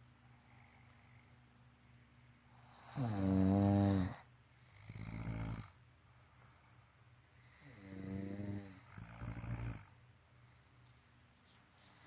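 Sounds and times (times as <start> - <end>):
person snoring: 2.6 - 4.2, 4.8 - 5.7, 7.4 - 9.9.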